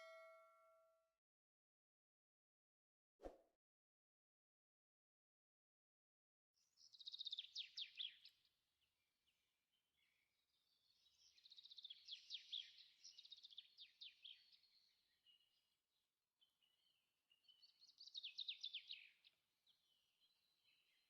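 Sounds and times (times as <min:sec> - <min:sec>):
songbird singing faintly: 0:06.6 - 0:15.7.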